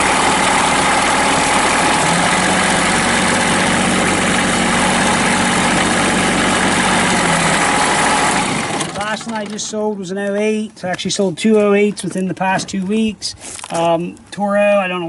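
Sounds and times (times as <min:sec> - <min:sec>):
muffler heat shields rattling: 0:00.0 - 0:09.8
diesel engine idling: 0:00.0 - 0:09.9.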